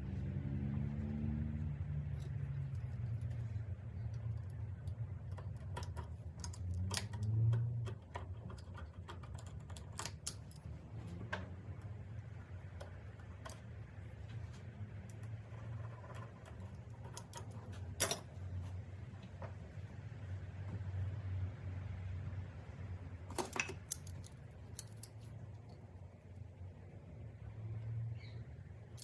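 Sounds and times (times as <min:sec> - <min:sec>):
steady low hum: 0:00.0 - 0:29.0
hand tools and metal parts clicking: 0:00.8 - 0:19.7, 0:23.2 - 0:25.9.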